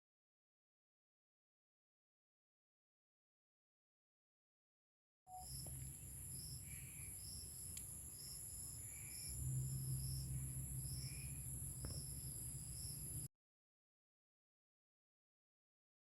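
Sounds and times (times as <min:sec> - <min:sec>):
crickets trilling: 0:05.3 - 0:13.3
short insect chirp: 0:05.3 - 0:13.3
soft low insect call: 0:05.3 - 0:13.3
low rumble: 0:08.2 - 0:13.3.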